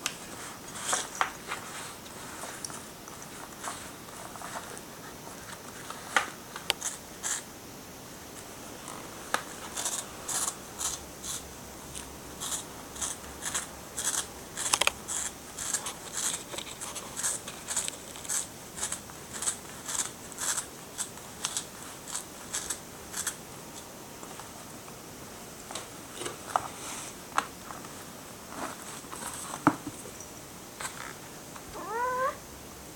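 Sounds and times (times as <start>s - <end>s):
cat scratching a pad: 0.3s - 7.5s, 8.8s - 23.4s.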